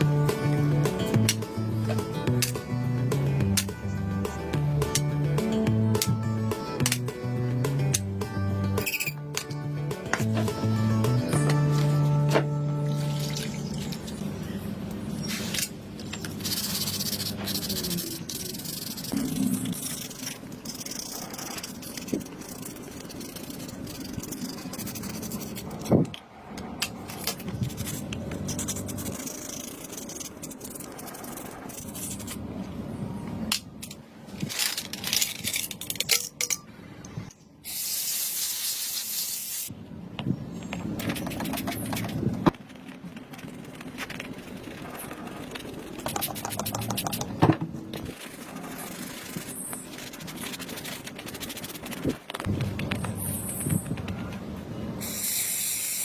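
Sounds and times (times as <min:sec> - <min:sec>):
spray hissing: 0:55.0 - 0:56.0.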